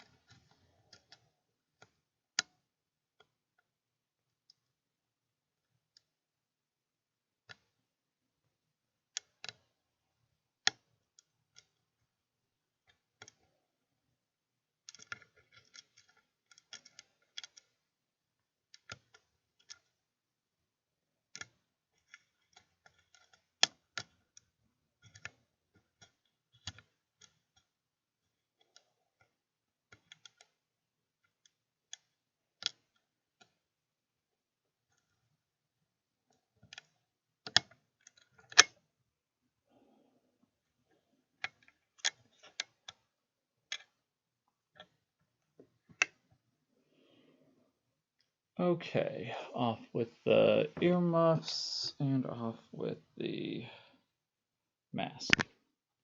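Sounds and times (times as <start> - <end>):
lock pick clicking in padlock: 36.7 - 38.8.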